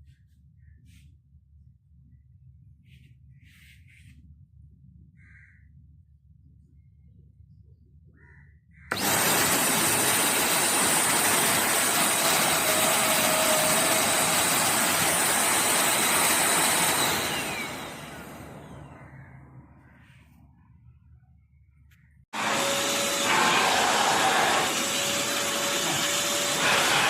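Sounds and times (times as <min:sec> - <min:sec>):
vacuum cleaner motor whining: 0:08.9 - 0:19.3, 0:22.3 - 0:27.0.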